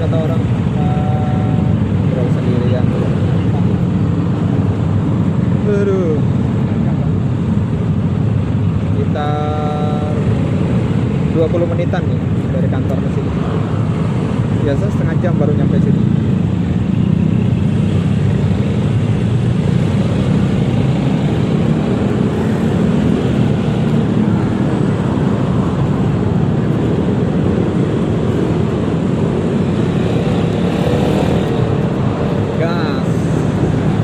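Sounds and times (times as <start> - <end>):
road and wind rush: 0.0 - 34.0
surrounding traffic: 0.0 - 34.0
scooter engine hum: 16.0 - 34.0.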